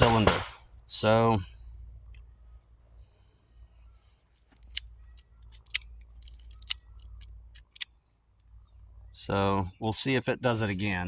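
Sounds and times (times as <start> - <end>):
revolver metallic clicks: 4.4 - 8.6.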